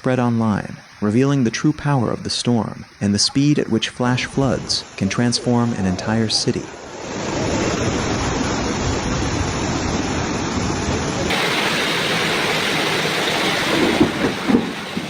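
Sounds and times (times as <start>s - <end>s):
floodwater rushing: 0.0s - 15.0s.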